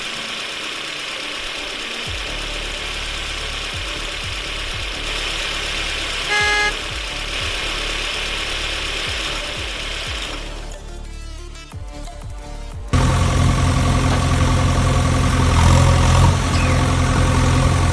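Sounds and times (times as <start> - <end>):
tractor engine idling: 0.0 - 17.9
short loud beep: 6.2 - 6.8.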